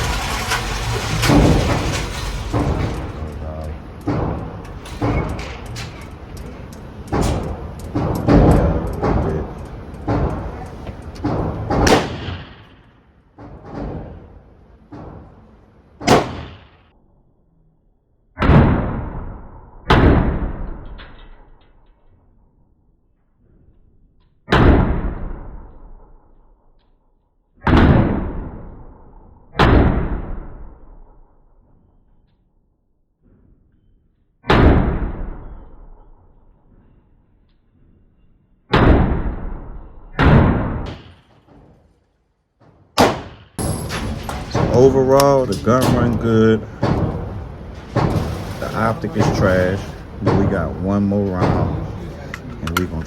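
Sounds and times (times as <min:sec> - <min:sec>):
pistol shots echoing: 0:03.7 - 0:12.9, 0:16.0 - 0:16.8, 0:43.0 - 0:53.0.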